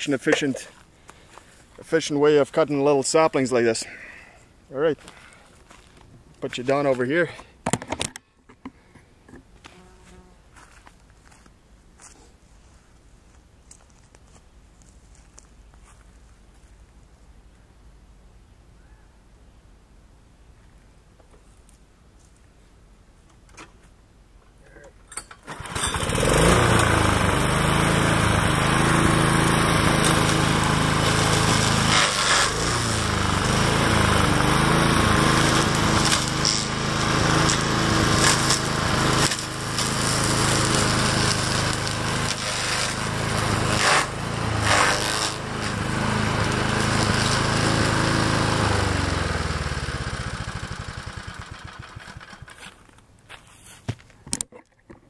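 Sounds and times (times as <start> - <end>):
lawnmower engine running: 25.3 - 53.0
blade cracking saplings: 41.7 - 43.0, 43.7 - 45.8.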